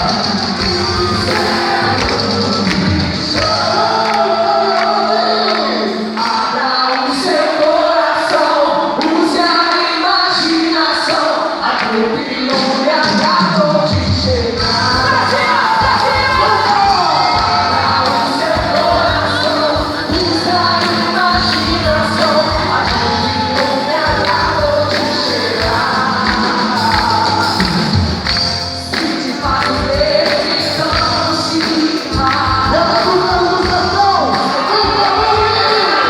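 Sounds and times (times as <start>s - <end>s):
band with steady beat: 0.0s - 6.6s, 12.5s - 36.0s
person singing: 0.0s - 36.0s.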